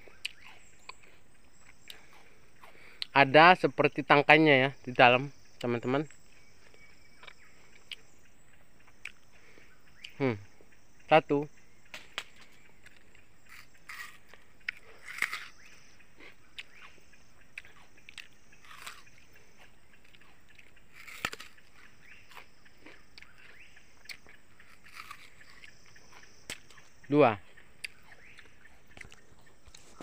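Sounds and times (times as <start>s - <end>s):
high insect drone: 0.0s - 30.0s
soft crackles and rustles: 29.0s - 30.0s.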